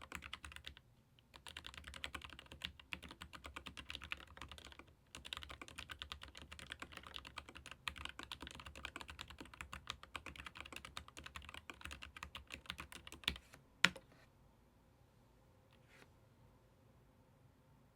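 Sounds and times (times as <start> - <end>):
fast typing on mechanical keyboard: 0.0 - 13.4.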